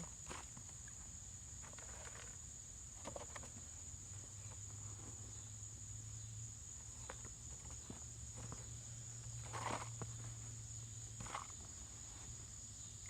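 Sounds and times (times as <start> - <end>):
soil scraping and crunching: 9.4 - 10.2.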